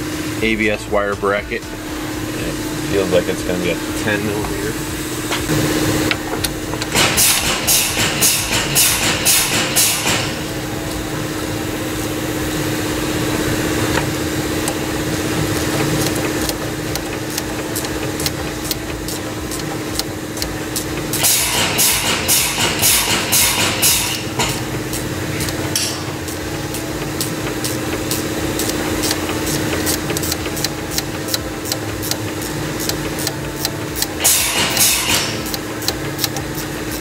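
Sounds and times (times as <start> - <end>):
steady background hum: 0.0 - 37.0
hand ratchet clicking: 6.1 - 11.0, 13.8 - 37.0.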